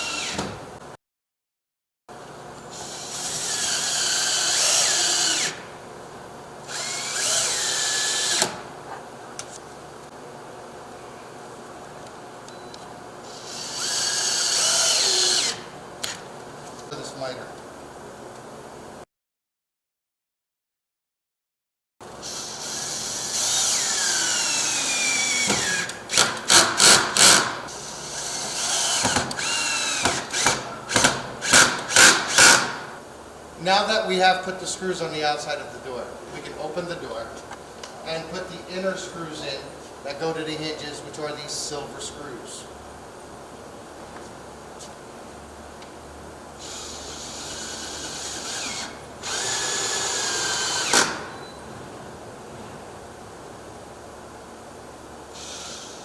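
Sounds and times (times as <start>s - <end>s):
power drill driving screws: 0.0s - 0.5s, 2.7s - 5.6s, 6.7s - 8.6s, 13.2s - 16.2s, 22.2s - 32.9s, 46.6s - 51.5s, 55.3s - 56.0s.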